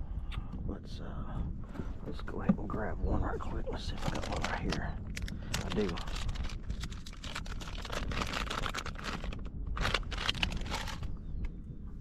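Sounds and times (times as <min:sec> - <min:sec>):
steady low rumble: 0:00.0 - 0:12.0
plastic packaging crinkling: 0:03.9 - 0:11.1.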